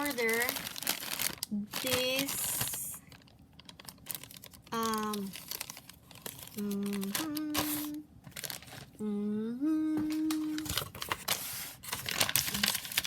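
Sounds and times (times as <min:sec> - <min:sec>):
packaging crinkling: 0:00.0 - 0:09.0, 0:10.1 - 0:13.0
woman humming: 0:06.6 - 0:08.1, 0:09.0 - 0:10.8.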